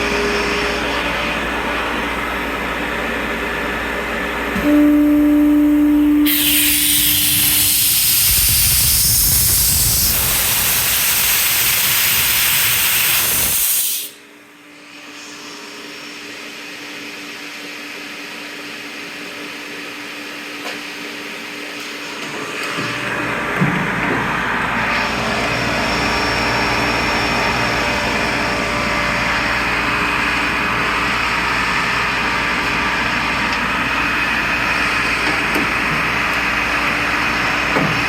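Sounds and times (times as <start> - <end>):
air compressor humming: 4.4 - 14.1
compressed air hissing: 6.2 - 14.2.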